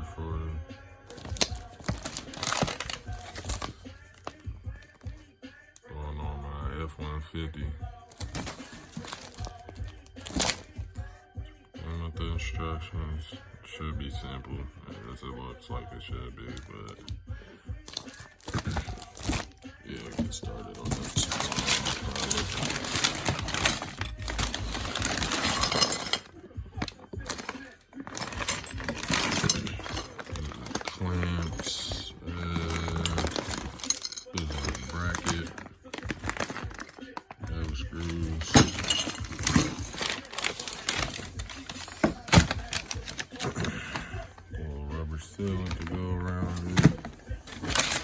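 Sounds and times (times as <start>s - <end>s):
packaging rustling: 1.1s - 5.0s, 8.1s - 10.8s, 17.9s - 44.3s, 45.4s - 48.0s
small parts clattering: 1.1s - 5.0s, 8.1s - 10.8s, 16.5s - 17.2s, 17.9s - 44.4s, 45.3s - 48.0s.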